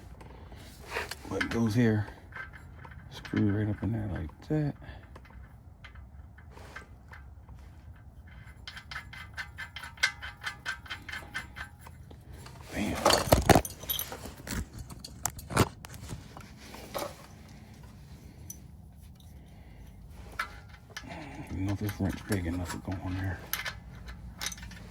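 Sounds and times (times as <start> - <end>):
oil filter clicking and scraping: 0.0 - 24.9.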